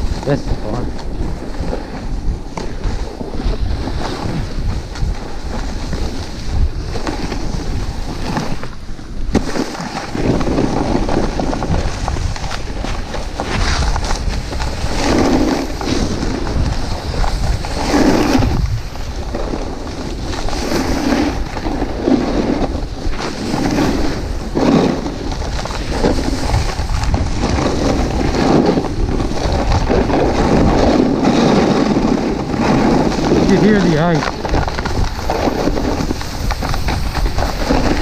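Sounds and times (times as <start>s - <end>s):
snowboard scraping icy snow: 0.0s - 38.0s
wind on microphone: 0.0s - 38.0s.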